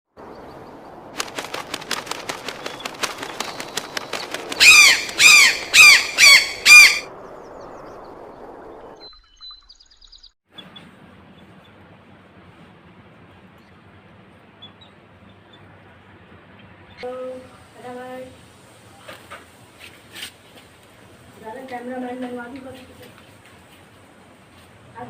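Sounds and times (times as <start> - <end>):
parrot chirps and clicks: 1.2 - 7.1
parrot harsh squawks: 4.6 - 7.1.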